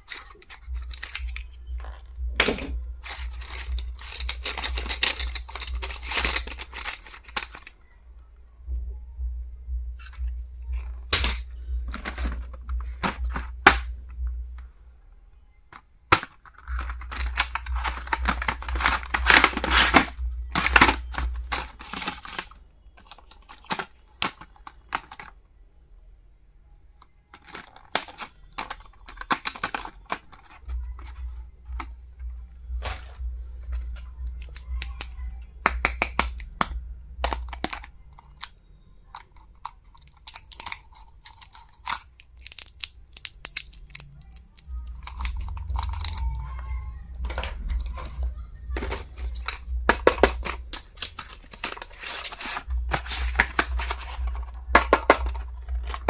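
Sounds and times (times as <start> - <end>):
plastic crinkling and tearing: 0.0 - 2.0, 3.0 - 7.7, 16.1 - 25.4, 27.4 - 31.8, 37.3 - 46.4, 48.8 - 56.0
low hum: 0.0 - 15.8.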